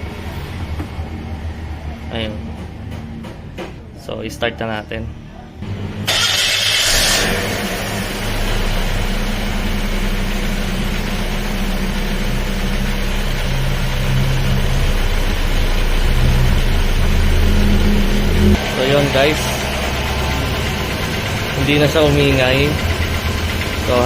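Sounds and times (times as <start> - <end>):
car engine idling: 5.6 - 24.0.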